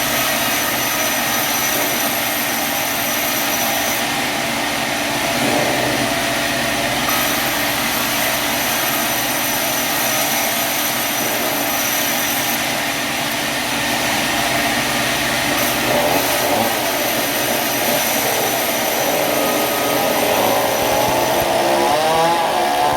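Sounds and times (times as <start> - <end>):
constant machine whine: 0.0 - 22.9
sawmill machinery running: 0.0 - 22.9.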